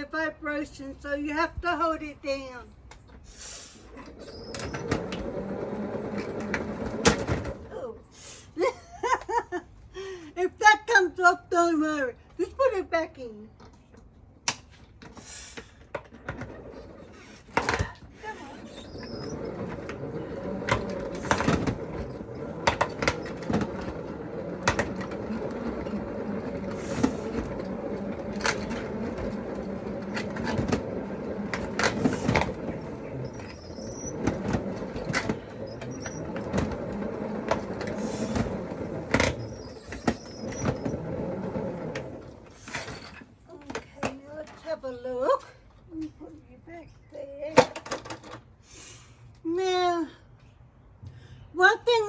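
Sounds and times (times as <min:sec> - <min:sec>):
spin dryer whirring: 0:04.1 - 0:07.6, 0:18.6 - 0:42.6.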